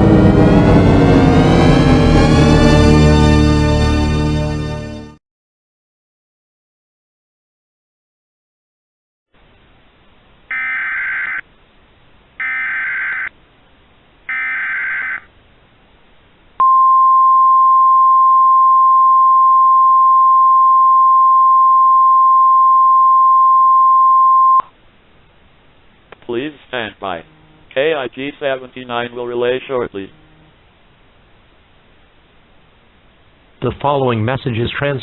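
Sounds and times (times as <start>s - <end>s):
steady warning alarm tone: 0.0s - 2.5s, 10.5s - 11.4s, 12.4s - 13.3s, 14.3s - 15.2s.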